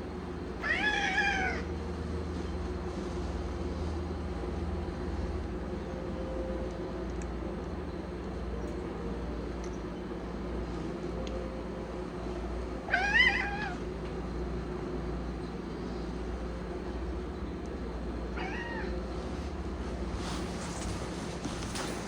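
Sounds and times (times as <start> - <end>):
steady low hum: 0.0 - 22.0
cat meowing: 0.6 - 1.7, 12.9 - 13.8, 18.4 - 19.0.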